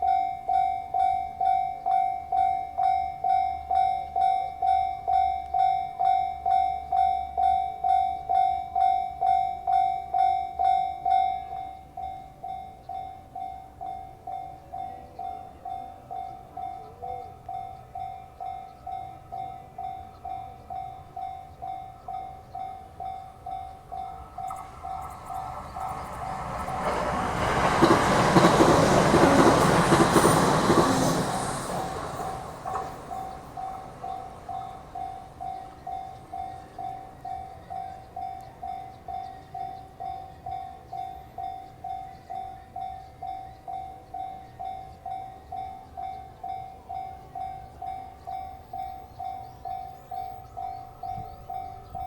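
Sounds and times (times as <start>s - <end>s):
approaching train rumble: 13.2s - 52.0s.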